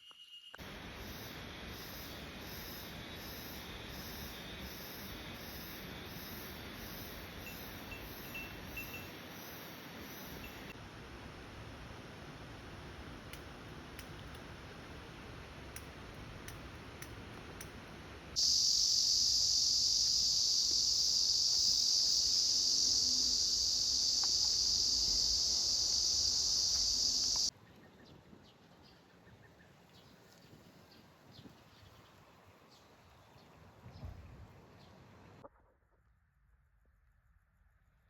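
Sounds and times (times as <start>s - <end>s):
cicada buzzing: 0.6s - 10.7s, 18.3s - 27.5s
light ticks: 13.3s - 14.6s, 15.7s - 17.8s, 26.7s - 27.5s.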